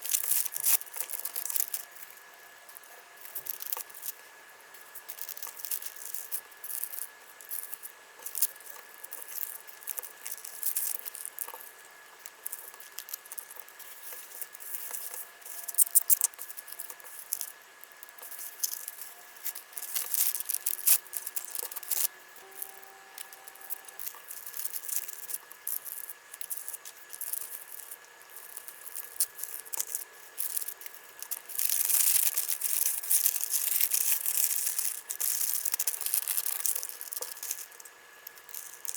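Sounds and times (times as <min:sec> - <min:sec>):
small items clicking and rattling: 0:00.0 - 0:02.1, 0:03.2 - 0:04.2, 0:05.0 - 0:38.9
packaging rustling: 0:28.9 - 0:37.8.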